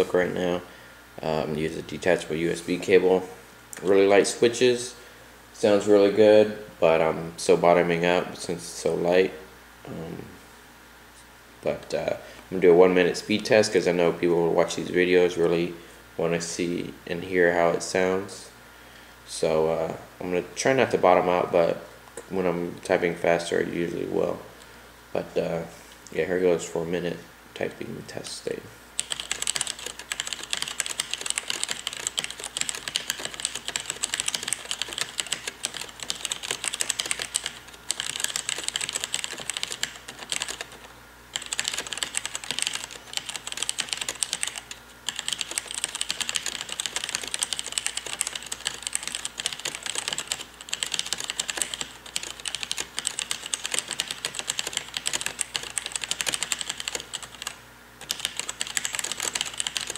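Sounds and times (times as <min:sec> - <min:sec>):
mechanical keyboard typing: 0:29.0 - 0:59.9.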